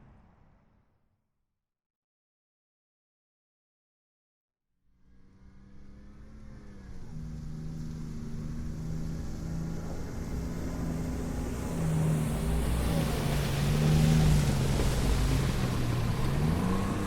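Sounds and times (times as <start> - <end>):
armoured vehicle engine running: 5.2 - 17.0.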